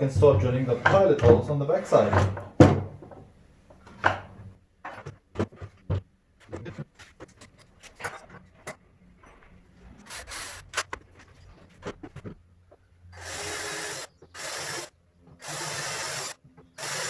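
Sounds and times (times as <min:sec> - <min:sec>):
knocks and clicks of wood and tools: 0:00.0 - 0:08.8.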